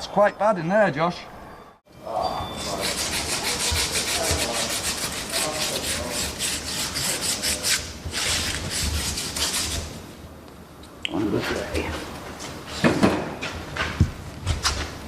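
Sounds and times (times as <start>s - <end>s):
hand tool scraping: 2.6s - 9.9s.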